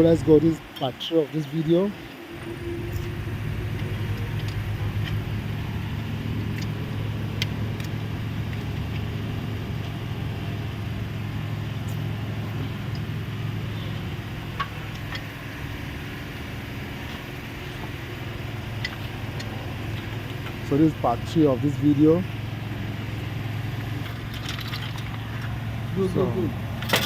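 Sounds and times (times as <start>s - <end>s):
engine humming steadily: 0.0s - 27.0s.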